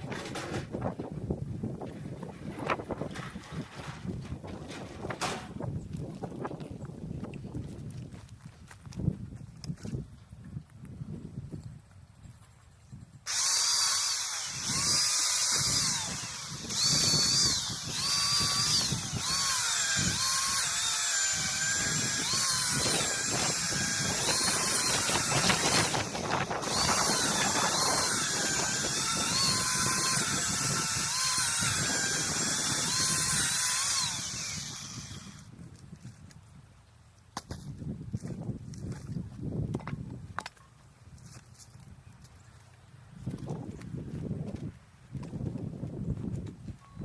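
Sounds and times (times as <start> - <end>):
power saw cutting firewood: 0.0 - 1.0, 2.5 - 5.6, 13.3 - 35.5.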